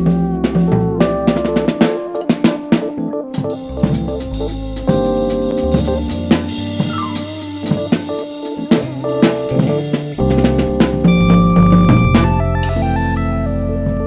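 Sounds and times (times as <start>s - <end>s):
drum kit: 0.0s - 14.0s
walking bass line: 3.4s - 14.0s.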